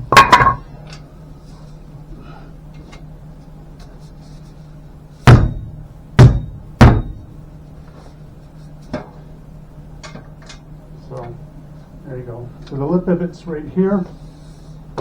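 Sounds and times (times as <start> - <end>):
metal knocks with ringing: 0.1 - 0.7, 5.3 - 7.2.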